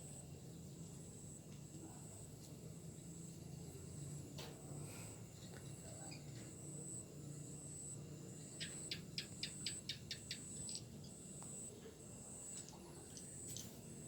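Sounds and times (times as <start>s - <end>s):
small bird chirping: 8.4s - 11.7s.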